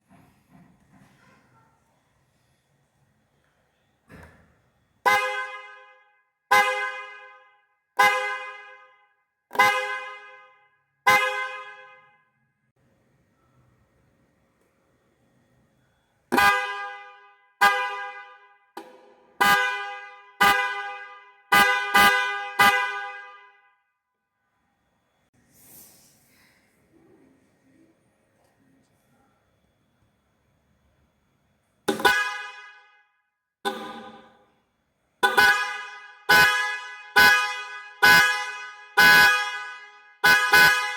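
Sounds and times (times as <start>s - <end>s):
car horn honks: 5.0s - 12.3s, 16.3s - 23.9s, 31.9s - 34.6s, 35.2s - 40.9s.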